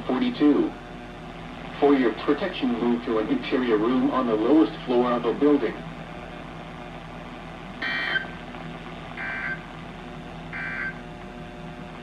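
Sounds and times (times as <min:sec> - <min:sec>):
low radio hum: 0:00.0 - 0:12.0
buzzy digital data tones: 0:07.4 - 0:11.2.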